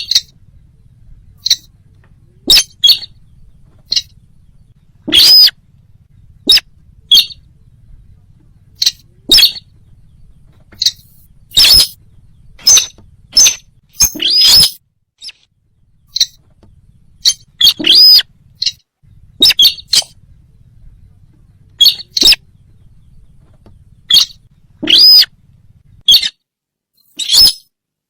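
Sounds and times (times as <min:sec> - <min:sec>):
squeaky bird lure call: 0:00.0 - 0:00.3, 0:01.4 - 0:01.7, 0:02.5 - 0:03.1, 0:03.9 - 0:04.1, 0:05.1 - 0:05.6, 0:10.8 - 0:12.0, 0:12.6 - 0:15.4, 0:16.1 - 0:16.4, 0:17.2 - 0:18.8, 0:19.4 - 0:20.2, 0:21.8 - 0:22.4, 0:24.1 - 0:25.3, 0:26.1 - 0:26.4, 0:27.1 - 0:27.7
faint low hum: 0:00.0 - 0:28.0.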